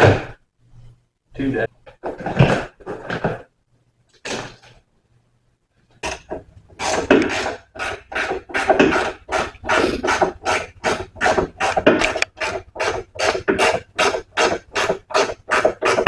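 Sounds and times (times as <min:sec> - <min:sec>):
rasping scraping strokes: 0:06.0 - 0:16.0.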